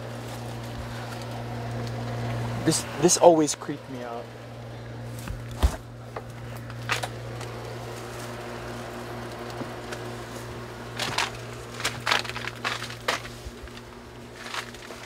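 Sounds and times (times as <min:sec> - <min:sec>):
steady low hum: 0:00.0 - 0:15.0
rustling: 0:10.0 - 0:15.0.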